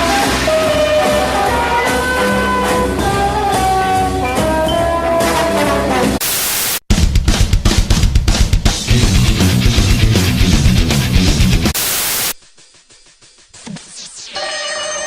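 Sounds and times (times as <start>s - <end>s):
loud rock music: 0.0s - 6.2s, 6.9s - 12.2s
static hiss: 6.2s - 6.9s, 11.6s - 14.4s.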